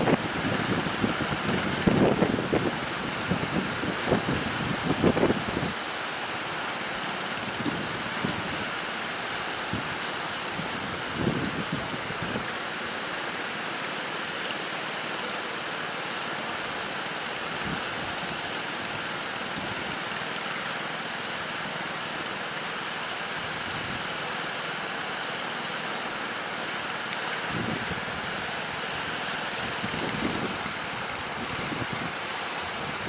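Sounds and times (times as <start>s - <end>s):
strong wind: 0.0s - 5.8s, 7.4s - 12.6s, 17.5s - 20.0s, 23.4s - 24.2s, 27.4s - 33.0s
surf rushing: 0.0s - 33.0s
wind thumps on microphone: 27.5s - 28.3s, 28.9s - 33.0s.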